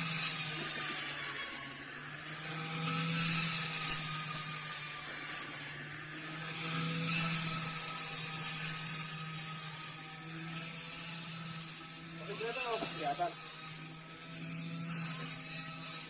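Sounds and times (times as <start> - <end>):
electric motor humming and hissing: 0.0 - 16.0.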